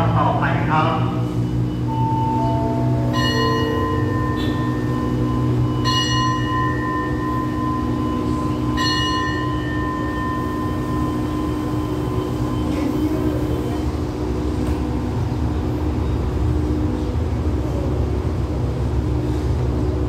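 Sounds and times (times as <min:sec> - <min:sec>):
falling electronic chime: 0:01.7 - 0:13.9
bell ringing with overtones: 0:01.7 - 0:14.1.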